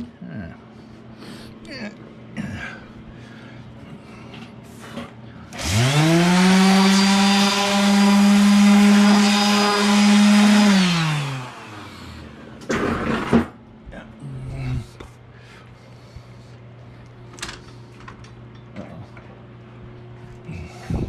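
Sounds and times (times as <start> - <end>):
power tool motor spinning: 5.5 - 12.4.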